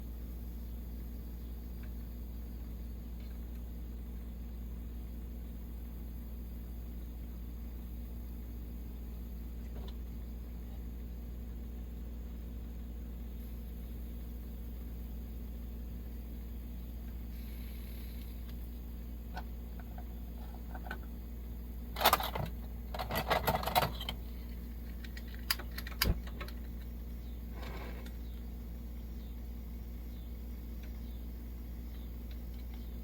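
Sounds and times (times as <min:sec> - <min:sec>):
steady low hum: 0:00.0 - 0:33.0
metallic clicking and rattling: 0:22.0 - 0:24.2, 0:24.8 - 0:26.9.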